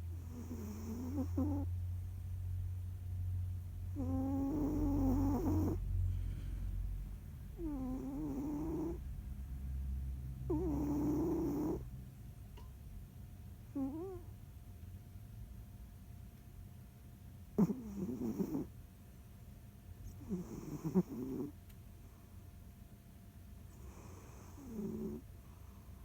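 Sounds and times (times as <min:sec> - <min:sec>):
cat snoring: 0:00.2 - 0:01.7, 0:03.9 - 0:06.2, 0:07.6 - 0:09.1, 0:10.5 - 0:11.9, 0:13.7 - 0:14.3, 0:17.6 - 0:18.8, 0:20.0 - 0:21.6, 0:23.7 - 0:25.3
steady low rumble: 0:01.5 - 0:10.8.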